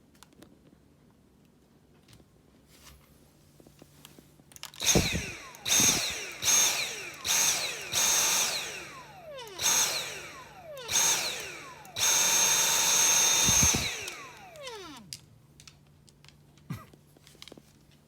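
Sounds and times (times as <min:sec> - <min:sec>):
vacuum cleaner motor whining: 0:04.8 - 0:15.2.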